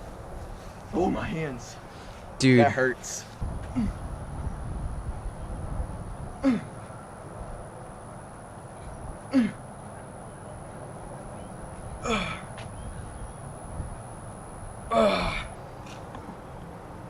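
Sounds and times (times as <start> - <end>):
man gasping with effort: 3.6 - 4.0, 12.0 - 12.5, 14.9 - 15.6.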